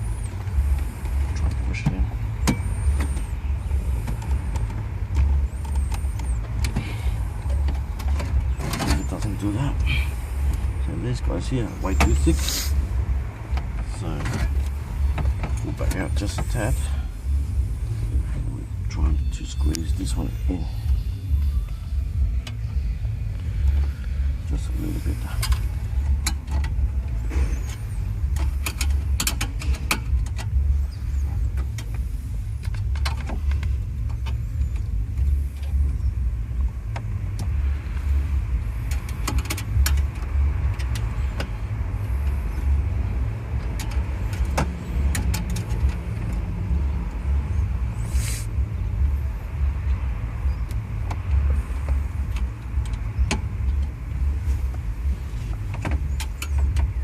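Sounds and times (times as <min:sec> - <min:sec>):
low rumble: 0:00.0 - 0:57.0
short hiss: 0:48.1 - 0:48.5.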